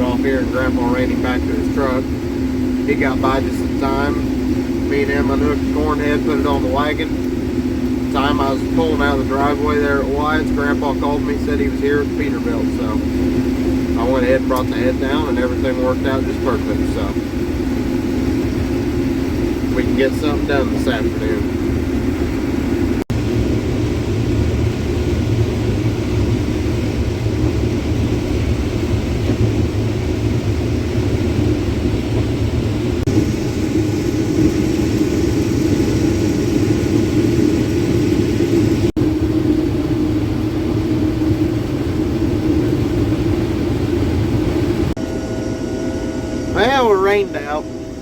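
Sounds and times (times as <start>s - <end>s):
combine harvester engine rumble: 0.0s - 48.0s.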